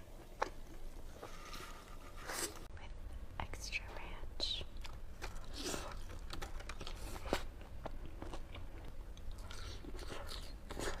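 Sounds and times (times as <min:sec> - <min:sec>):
chewing and crunching food: 0:04.8 - 0:11.0.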